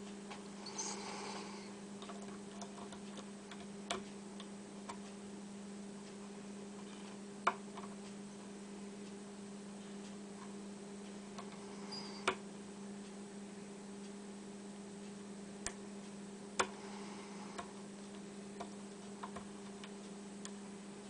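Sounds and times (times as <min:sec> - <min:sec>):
low electrical hum: 0:00.0 - 0:21.0.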